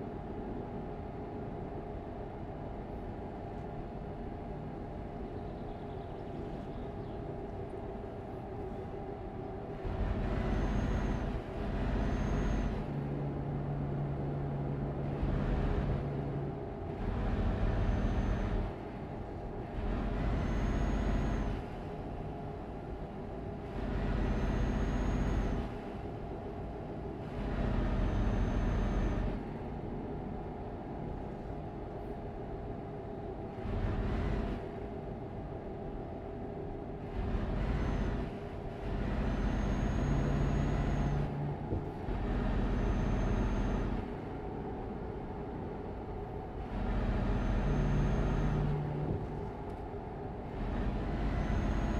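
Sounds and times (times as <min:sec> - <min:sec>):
faint high whine: 0:05.4 - 0:13.0, 0:17.7 - 0:19.4, 0:20.2 - 0:22.0, 0:24.0 - 0:26.0, 0:27.8 - 0:29.5, 0:37.4 - 0:46.4, 0:47.0 - 0:50.0, 0:50.8 - 0:51.9
truck engine running: 0:37.0 - 0:51.9.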